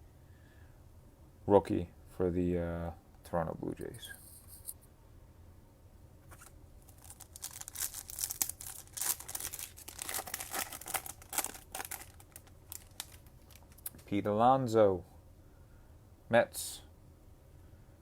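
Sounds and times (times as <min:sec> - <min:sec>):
foil wrapper tearing and crinkling: 0:06.3 - 0:14.0.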